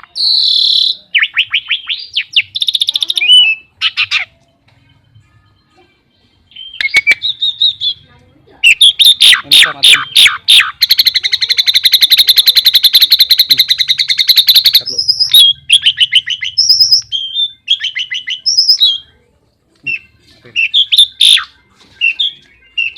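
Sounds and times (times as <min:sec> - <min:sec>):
starling rattling chatter and whistles: 0:06.5 - 0:08.0, 0:08.6 - 0:19.1, 0:19.9 - 0:22.9.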